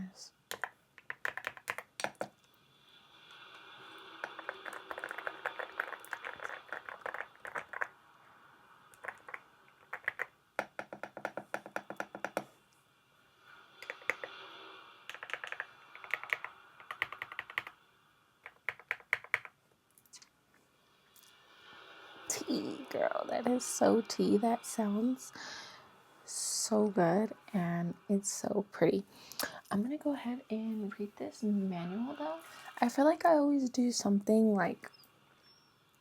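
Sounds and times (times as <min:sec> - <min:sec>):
mechanical keyboard typing: 0:00.5 - 0:02.3, 0:04.2 - 0:07.9, 0:09.0 - 0:12.4, 0:13.8 - 0:14.4, 0:15.1 - 0:17.8, 0:18.4 - 0:19.6.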